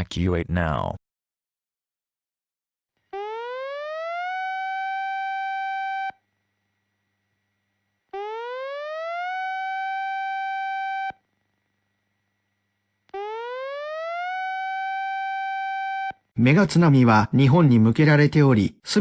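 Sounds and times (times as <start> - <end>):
synthesized siren-like alert tone: 3.2 - 6.2, 8.2 - 11.2, 13.2 - 16.2.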